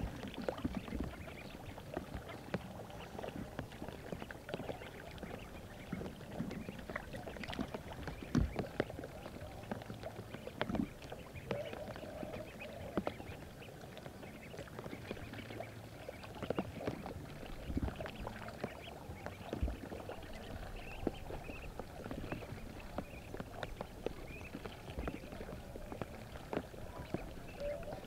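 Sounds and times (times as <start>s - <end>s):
ducklings splashing in water: 0.0s - 28.0s
faint duck calls: 0.5s - 28.0s.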